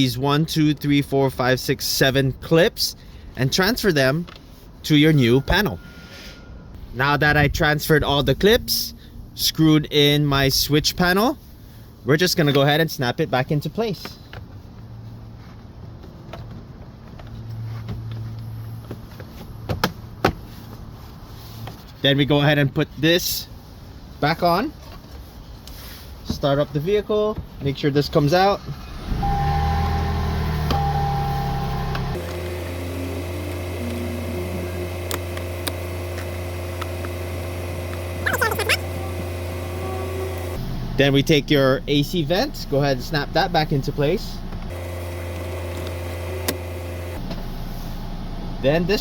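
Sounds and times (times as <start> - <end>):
car engine idling: 28.8 - 49.0
low steady hum: 29.1 - 44.7.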